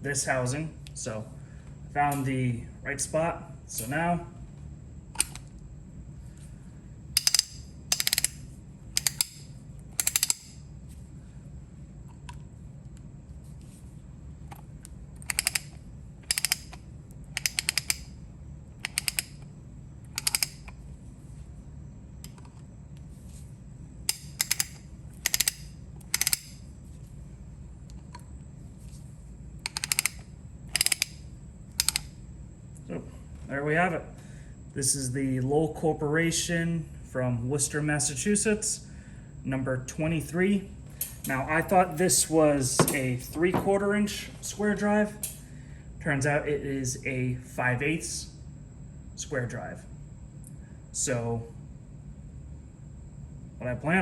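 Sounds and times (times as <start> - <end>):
ratchet pawl clicking: 7.2 - 8.4, 9.0 - 9.4, 10.0 - 10.6, 15.2 - 18.1, 18.8 - 19.4, 20.1 - 20.7, 24.1 - 26.6, 29.6 - 32.1.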